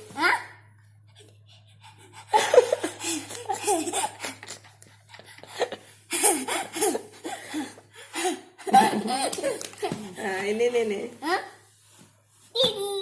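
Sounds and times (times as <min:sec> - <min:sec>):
laughter: 0:02.3 - 0:09.9.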